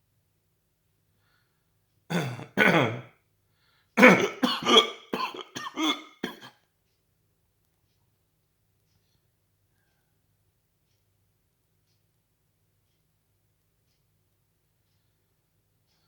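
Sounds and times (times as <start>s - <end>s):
person's voiced throat bursts: 2.1s - 3.1s, 4.0s - 6.5s.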